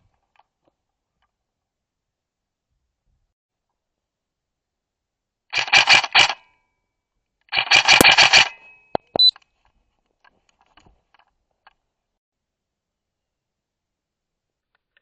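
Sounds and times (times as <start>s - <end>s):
rapid airsoft rifle fire: 5.5s - 6.5s, 7.5s - 8.7s
sharp clicks: 7.6s - 9.4s.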